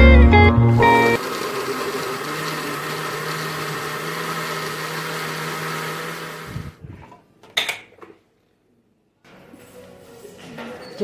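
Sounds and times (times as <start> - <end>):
electric blender running: 0.9 - 6.8.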